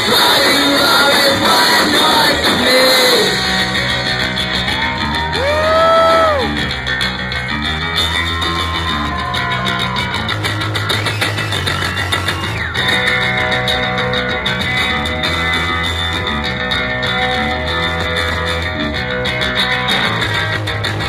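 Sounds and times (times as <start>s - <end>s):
bass guitar: 0.0s - 21.0s
electric guitar: 0.0s - 21.0s.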